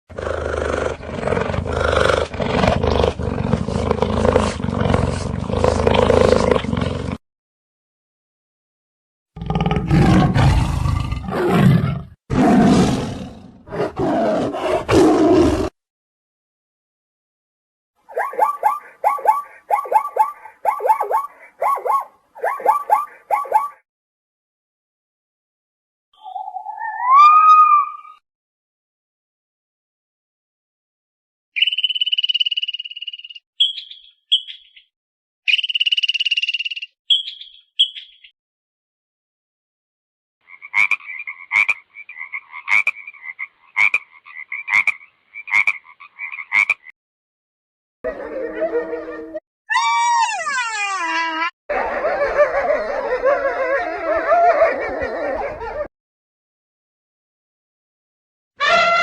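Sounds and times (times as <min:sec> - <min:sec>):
big cat roaring and growling: 0:00.1 - 0:07.2, 0:09.4 - 0:15.8
high-pitched animal trill: 0:26.3 - 0:28.2, 0:49.7 - 0:51.5, 0:58.6 - 0:59.0.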